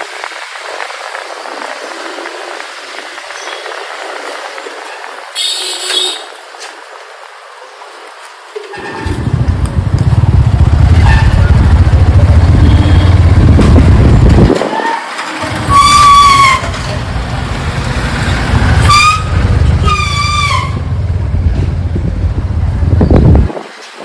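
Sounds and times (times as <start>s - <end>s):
road rumble: 0.0s - 24.0s
vehicle horns honking: 5.4s - 6.4s, 10.8s - 13.7s, 15.4s - 17.1s, 18.1s - 21.4s
motorcycle engine: 8.6s - 23.5s.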